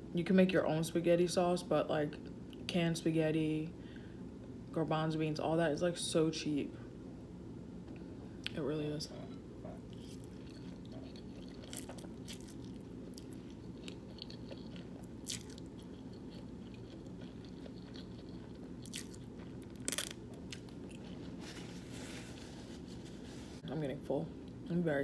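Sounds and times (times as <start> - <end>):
steady low hum: 0.0 - 25.0
person chewing food: 9.2 - 22.8.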